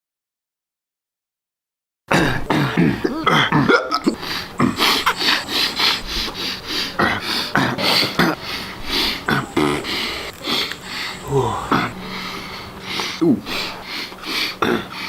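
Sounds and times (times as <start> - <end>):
man grunting: 2.1 - 5.7, 6.7 - 15.0
man sniffing hard: 2.1 - 15.0.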